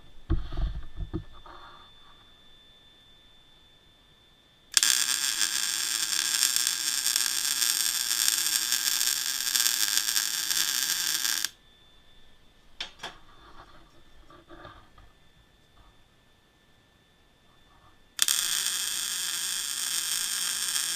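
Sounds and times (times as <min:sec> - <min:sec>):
welding arc crackling: 0:04.7 - 0:11.6, 0:18.2 - 0:20.9.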